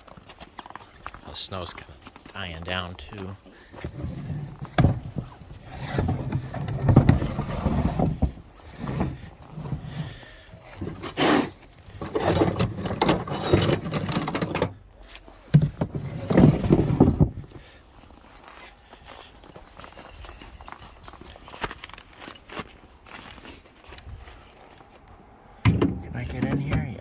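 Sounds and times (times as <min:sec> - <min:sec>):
footsteps crunching through snow: 0:17.6 - 0:25.1.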